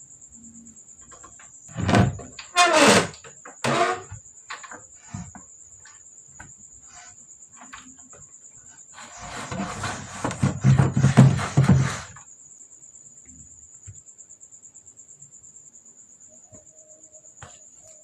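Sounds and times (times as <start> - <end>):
cricket trilling: 0.0 - 18.0
scraping sounds: 8.9 - 12.2.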